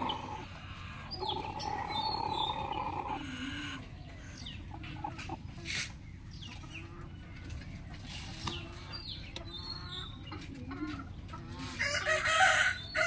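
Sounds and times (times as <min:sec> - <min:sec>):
chickens clucking: 0:00.0 - 0:13.0
rooster crowing: 0:11.8 - 0:13.0.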